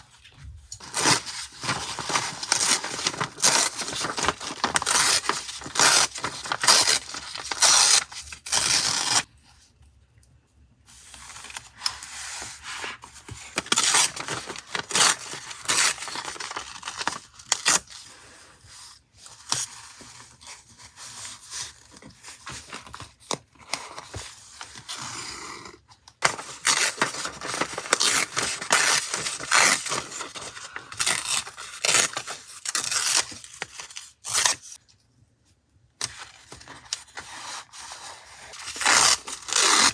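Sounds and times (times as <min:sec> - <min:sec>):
paper and stickers rustling: 0:00.0 - 0:09.3, 0:10.9 - 0:17.9, 0:26.2 - 0:33.7.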